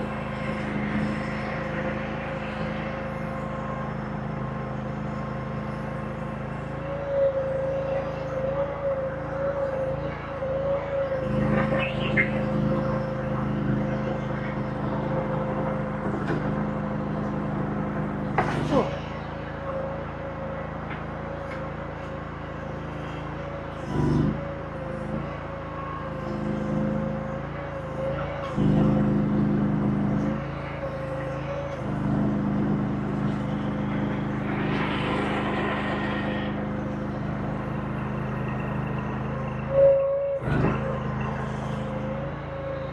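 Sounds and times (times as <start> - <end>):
diesel engine under load: 0.0 - 42.9
high whine: 0.0 - 42.9
harsh hiss or scrape: 33.9 - 37.3.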